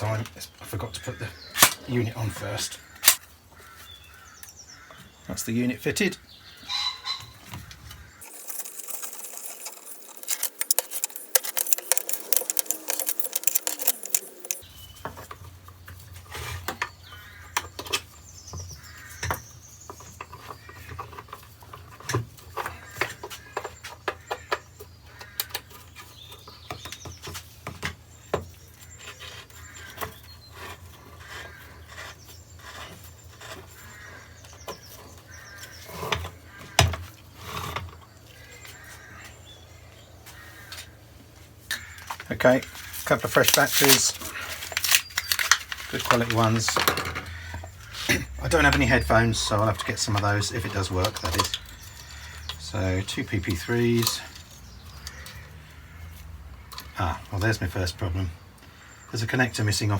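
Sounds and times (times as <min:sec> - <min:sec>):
plastic and metal parts clicking: 0:01.6 - 0:01.8, 0:03.0 - 0:03.2, 0:08.2 - 0:14.6, 0:42.9 - 0:48.2, 0:49.4 - 0:52.6.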